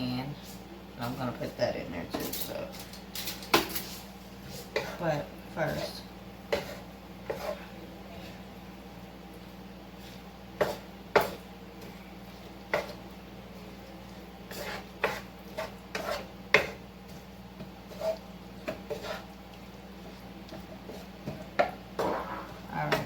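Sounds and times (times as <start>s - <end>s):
steady low hum: 0.0s - 23.0s
utensil scraping a pan: 2.1s - 8.5s, 10.0s - 13.0s, 14.4s - 19.4s, 20.0s - 23.0s.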